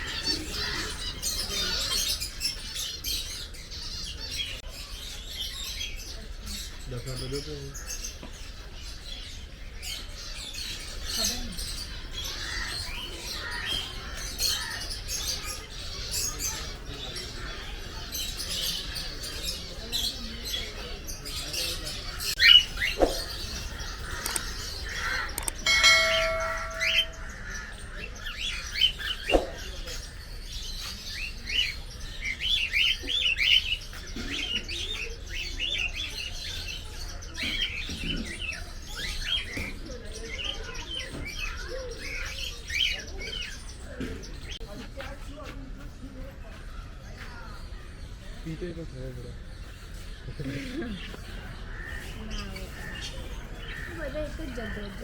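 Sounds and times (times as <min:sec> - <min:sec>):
birds chirping and twittering: 0:00.0 - 0:55.0.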